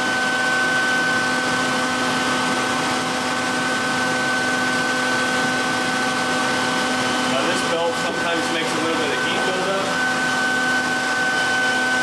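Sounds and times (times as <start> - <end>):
sharpening machine motor whine: 0.0 - 12.0
vacuum rushing hiss: 4.2 - 11.9.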